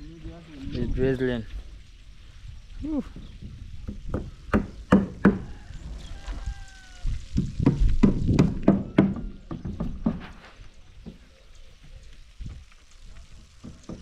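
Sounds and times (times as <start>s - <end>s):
sharp knocks and clatter: 7.5s - 11.2s, 13.4s - 14.0s.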